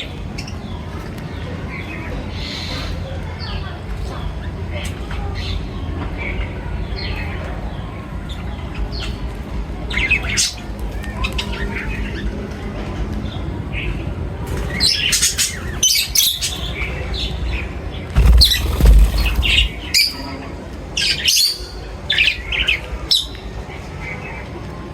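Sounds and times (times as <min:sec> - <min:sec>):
low rumble: 0:18.2 - 0:19.8.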